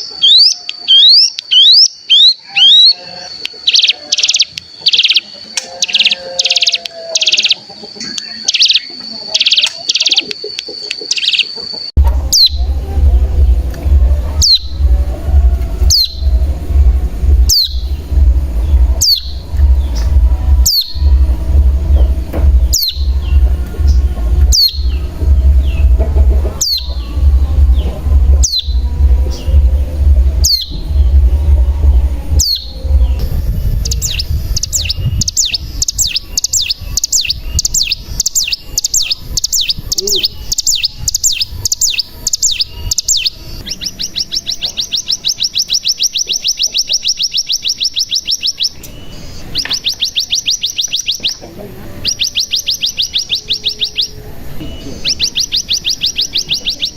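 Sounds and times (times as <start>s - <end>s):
bird calls and trill: 0.0s - 56.9s
low hum: 11.8s - 45.6s.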